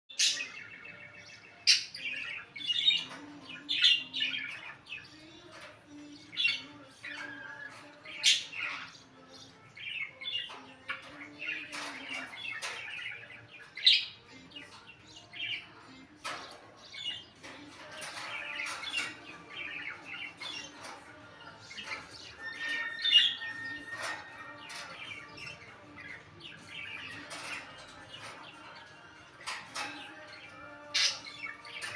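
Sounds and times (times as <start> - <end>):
parakeet squawking and chattering: 0.1 - 31.9.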